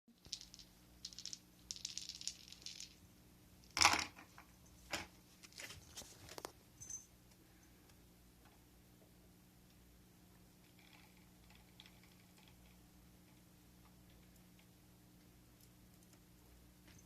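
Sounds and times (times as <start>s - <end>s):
ice cubes rattling on hard surface: 0.2s - 3.0s.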